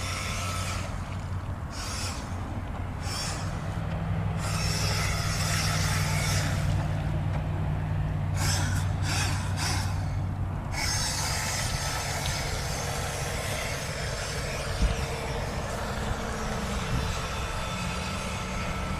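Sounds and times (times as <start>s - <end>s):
steady low hum: 0.0s - 18.9s
rc boat hissing rush: 8.4s - 18.9s.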